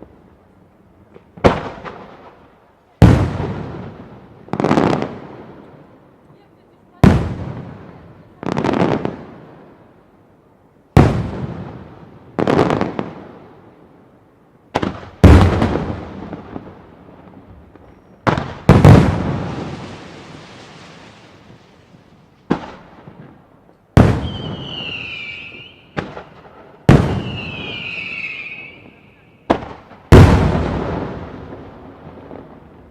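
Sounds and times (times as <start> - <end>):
fireworks exploding with echoing rumble: 0.0 - 10.2, 10.8 - 32.9
high wavering whistle: 24.2 - 26.0, 27.2 - 29.4.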